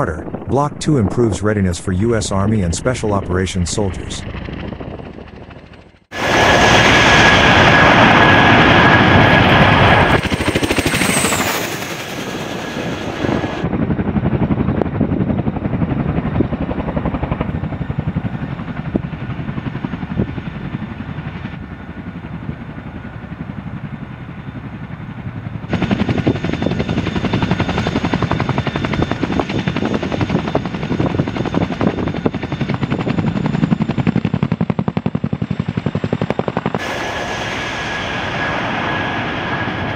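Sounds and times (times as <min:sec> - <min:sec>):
steady high whine: 0:00.0 - 0:13.6, 0:36.5 - 0:39.9
helicopter rotor blades chopping: 0:00.0 - 0:39.9.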